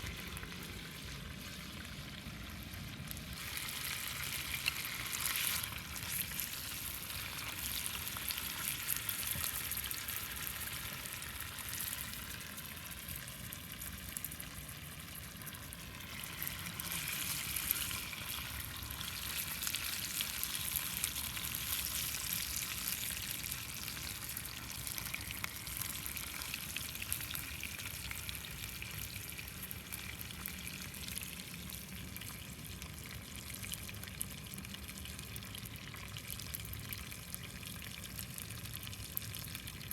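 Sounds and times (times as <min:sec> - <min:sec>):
food sizzling in a pan: 0:00.0 - 0:31.8.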